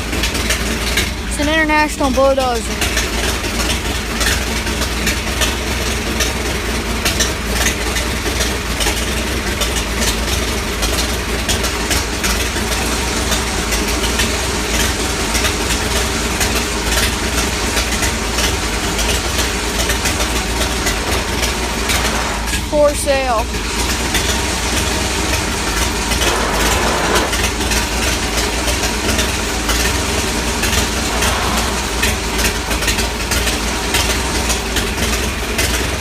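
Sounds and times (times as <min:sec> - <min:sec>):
bulldozer engine idling: 0:00.0 - 0:36.0.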